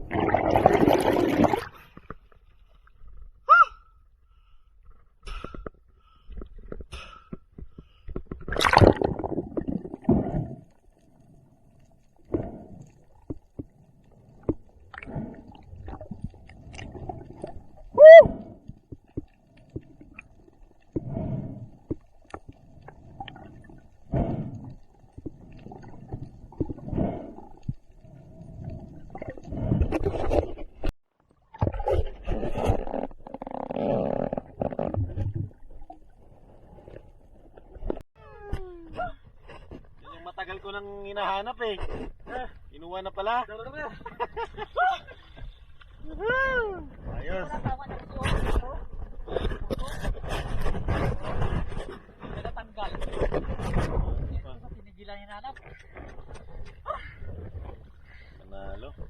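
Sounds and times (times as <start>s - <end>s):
underwater gurgling: 0.0s - 2.2s, 8.4s - 38.0s.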